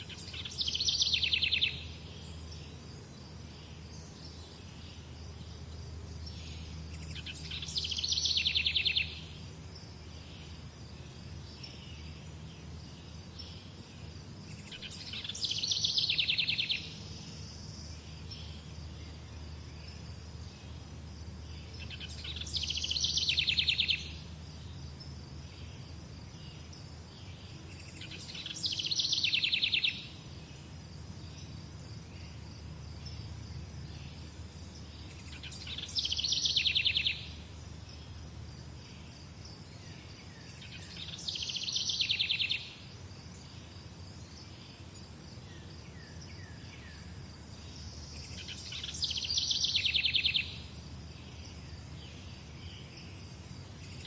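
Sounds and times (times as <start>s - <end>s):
songbird trilling: 0.0s - 2.4s, 6.2s - 9.4s, 14.5s - 18.7s, 21.6s - 24.3s, 27.8s - 30.2s, 34.8s - 37.6s, 40.4s - 42.8s, 47.9s - 50.8s.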